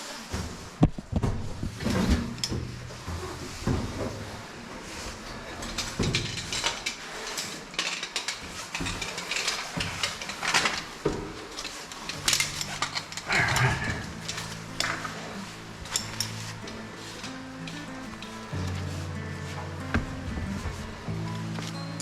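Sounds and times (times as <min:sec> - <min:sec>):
rope gear rustling: 0:00.0 - 0:22.0
metal climbing hardware clinking: 0:05.4 - 0:22.0.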